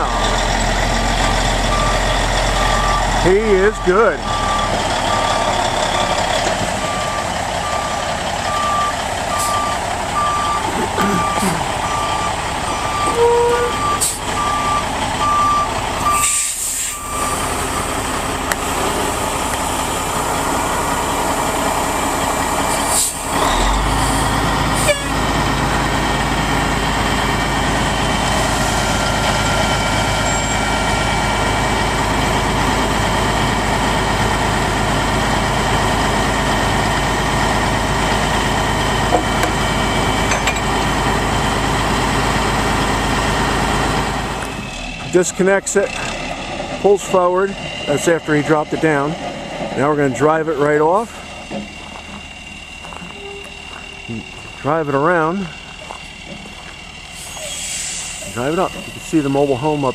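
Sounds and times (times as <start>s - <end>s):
diesel engine idling: 0.0s - 59.9s
backup alarm beeping: 1.2s - 6.2s, 6.8s - 16.3s, 16.9s - 18.0s, 52.0s - 56.1s.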